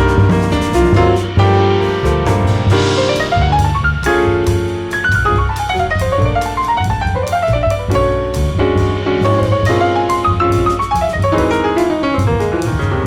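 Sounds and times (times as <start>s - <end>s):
bass: 0.0s - 13.0s
drums: 0.0s - 13.0s
jazz piano runs: 0.0s - 13.0s.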